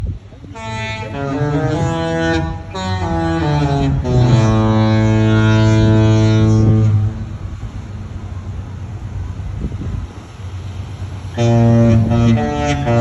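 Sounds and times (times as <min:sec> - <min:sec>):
wind: 0:00.0 - 0:13.0
deep ship horn: 0:00.1 - 0:13.0.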